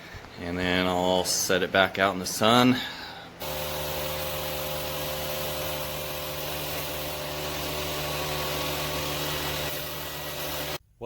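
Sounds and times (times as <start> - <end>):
motor hum: 3.4 - 10.8.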